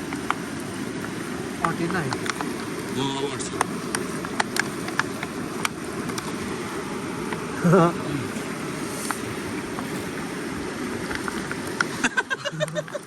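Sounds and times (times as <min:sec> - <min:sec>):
small clicks and taps: 0:00.0 - 0:00.4, 0:01.0 - 0:02.7, 0:03.5 - 0:06.4
flooded river rushing: 0:00.0 - 0:13.0.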